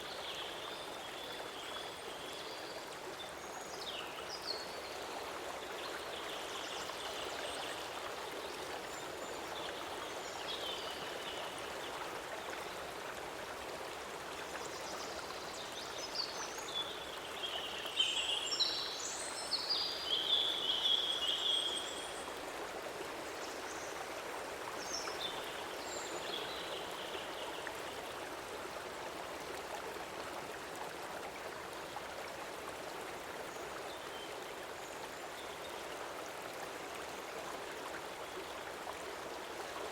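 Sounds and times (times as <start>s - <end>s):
stream water rushing: 0.0s - 39.9s.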